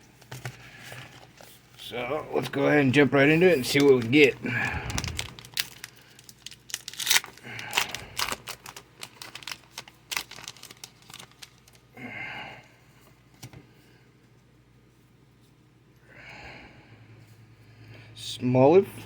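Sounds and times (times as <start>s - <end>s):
foil wrapper tearing and crinkling: 3.6s - 11.9s.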